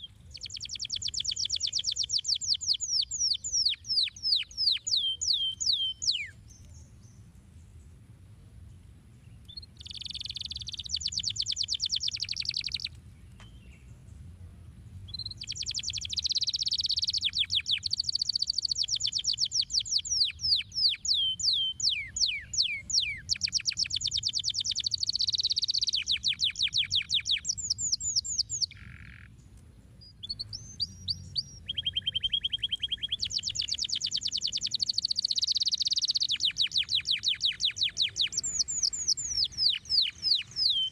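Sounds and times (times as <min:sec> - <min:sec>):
canary singing: 0:00.0 - 0:07.1, 0:09.4 - 0:13.8, 0:15.1 - 0:29.4, 0:30.0 - 0:40.9.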